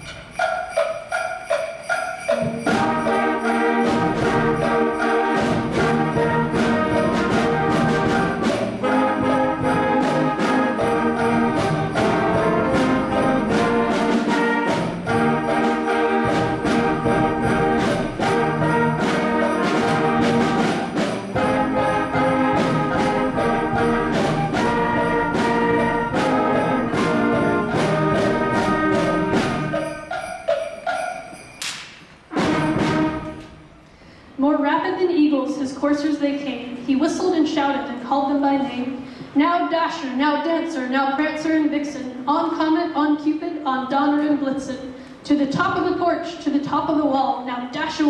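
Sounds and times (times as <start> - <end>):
concert band playing: 0.0 - 31.4, 32.1 - 34.0
sleigh bells shaking: 0.0 - 33.8.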